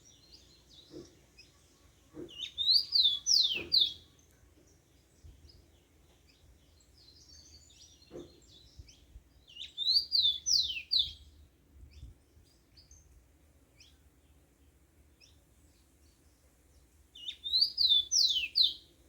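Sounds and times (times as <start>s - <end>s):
faint bird chirps: 0.0s - 19.0s
bird twittering: 2.3s - 4.0s, 9.5s - 11.2s, 17.2s - 18.8s.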